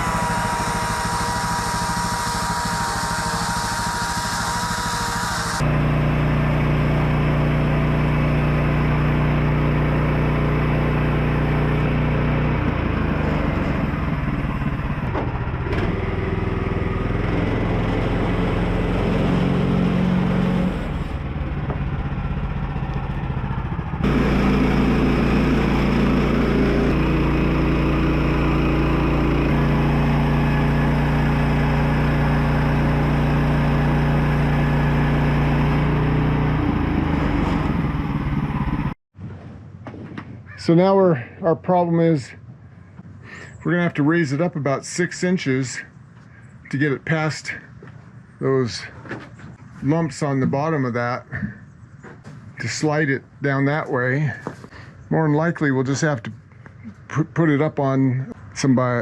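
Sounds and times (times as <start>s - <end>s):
engine running under load: 0.0s - 39.7s.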